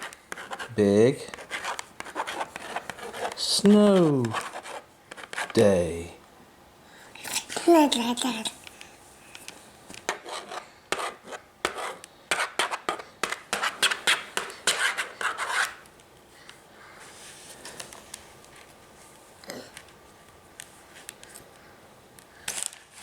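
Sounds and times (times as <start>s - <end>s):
rapid scratching on a surface: 0.0s - 5.6s, 10.1s - 15.8s.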